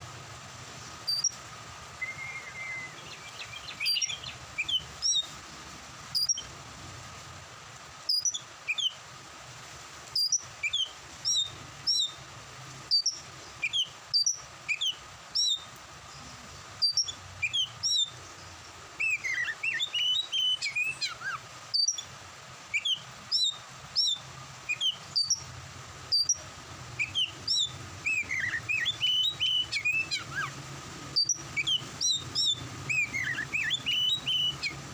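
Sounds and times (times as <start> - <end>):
bird singing whistled notes: 0.8 - 1.4, 2.0 - 5.4, 6.1 - 6.5, 8.1 - 9.0, 10.2 - 12.2, 12.9 - 22.1, 22.7 - 25.5, 26.1 - 34.9.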